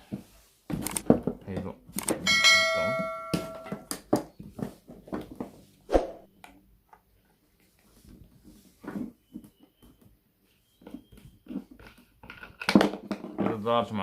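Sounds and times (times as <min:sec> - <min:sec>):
struck part ringing: 0:02.2 - 0:03.9.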